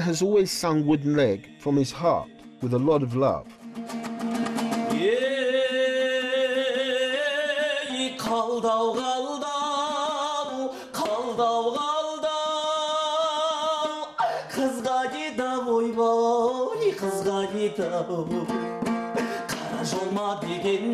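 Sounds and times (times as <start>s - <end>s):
man singing with vibrato: 0.0s - 3.3s, 4.4s - 20.9s
dombra strumming: 0.0s - 6.2s, 16.9s - 20.9s.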